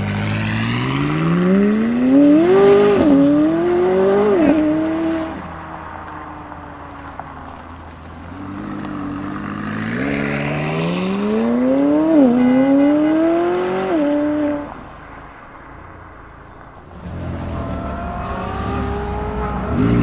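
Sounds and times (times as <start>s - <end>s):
car engine accelerating: 0.0s - 20.0s.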